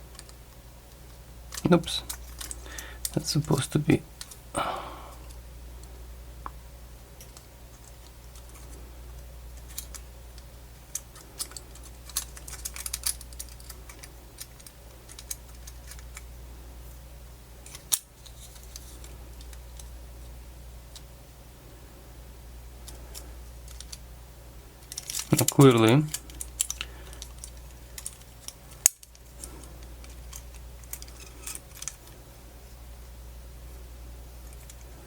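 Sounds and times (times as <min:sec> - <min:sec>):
steady low hum: 0:00.0 - 0:35.0
small plastic parts clicking: 0:01.5 - 0:03.6, 0:04.2 - 0:04.4, 0:09.6 - 0:10.0, 0:10.9 - 0:16.2, 0:24.8 - 0:32.2.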